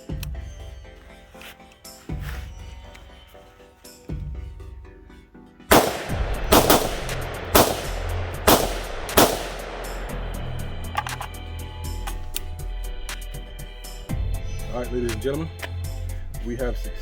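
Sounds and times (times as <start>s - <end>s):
rifle shots echoing: 5.7s - 11.2s.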